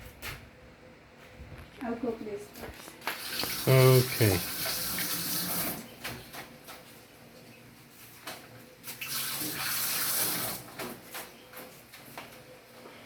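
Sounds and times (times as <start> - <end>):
tap water running into sink: 3.1 - 6.0, 8.9 - 10.8.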